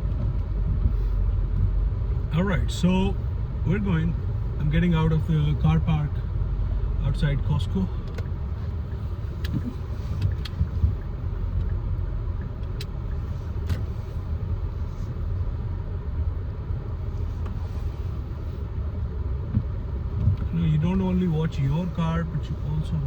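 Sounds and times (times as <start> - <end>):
car engine low rumble: 0.0 - 23.0.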